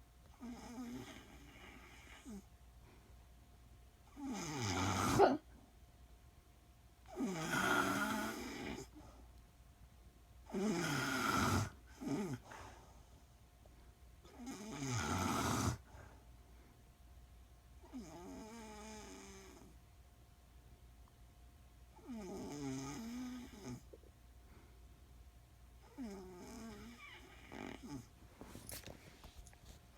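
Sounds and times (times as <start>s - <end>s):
woman snoring: 0.4s - 2.4s, 4.2s - 5.5s, 7.1s - 9.0s, 10.5s - 12.4s, 14.3s - 15.9s, 17.9s - 19.7s, 22.0s - 23.9s, 25.8s - 28.1s.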